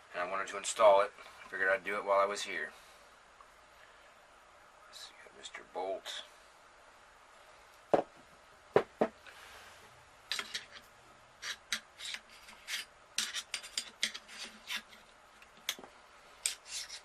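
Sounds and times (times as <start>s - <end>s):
rifle parts scraping and clicking: 10.3s - 15.8s.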